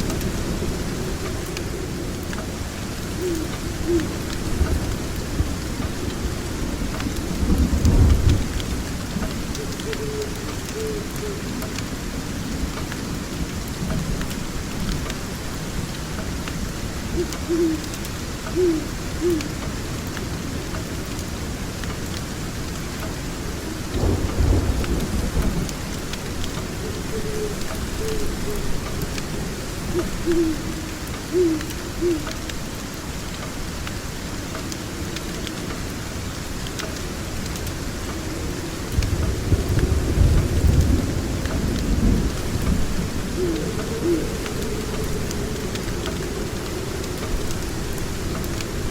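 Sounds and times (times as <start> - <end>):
low thunder rolls: 0.0 - 11.2, 23.9 - 31.1, 38.2 - 48.9
steady rain: 0.0 - 48.9.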